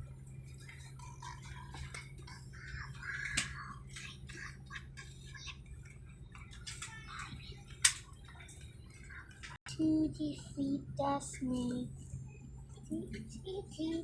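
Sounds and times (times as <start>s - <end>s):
small clicks and rustles: 0.4s - 9.6s.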